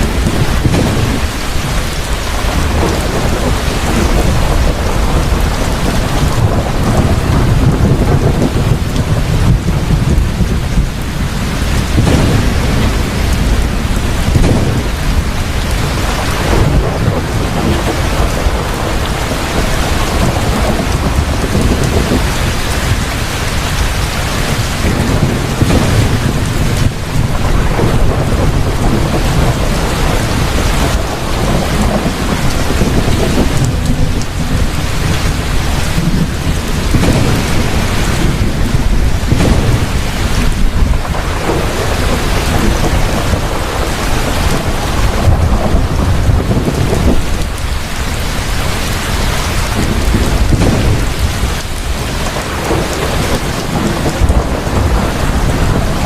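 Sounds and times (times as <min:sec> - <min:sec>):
heavy rain: 0:00.0 - 0:56.0
low rumble of thunder: 0:00.0 - 0:56.0.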